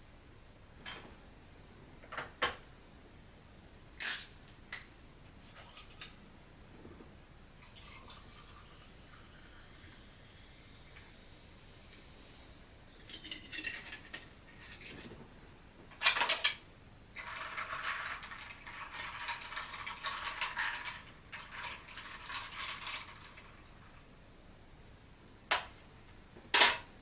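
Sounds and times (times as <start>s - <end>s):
glassware clinking: 26.6s - 27.0s.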